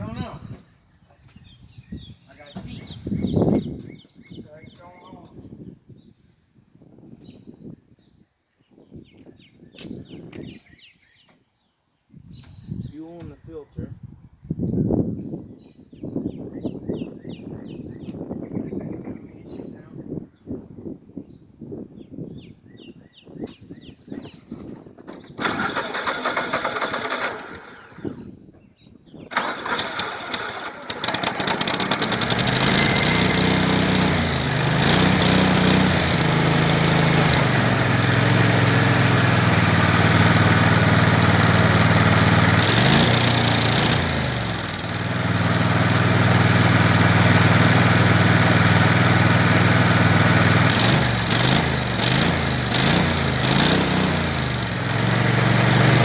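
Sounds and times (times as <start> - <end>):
engine revving: 25.4 - 28.1, 29.3 - 56.0
engine cranking: 25.4 - 28.2, 29.3 - 56.0.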